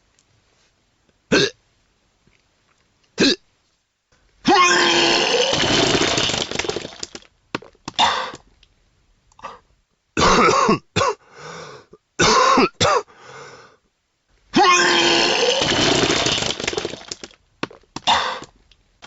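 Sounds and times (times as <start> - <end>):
person coughing and retching: 1.3 - 1.6, 3.2 - 3.4, 4.5 - 7.0, 7.9 - 8.4, 10.2 - 11.2, 12.2 - 13.1, 14.6 - 17.2, 18.0 - 18.5.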